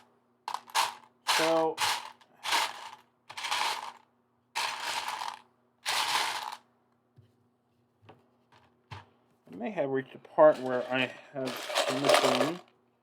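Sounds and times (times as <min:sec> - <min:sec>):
plastic pieces rattling: 0:00.0 - 0:04.0, 0:04.6 - 0:06.6, 0:11.4 - 0:12.7.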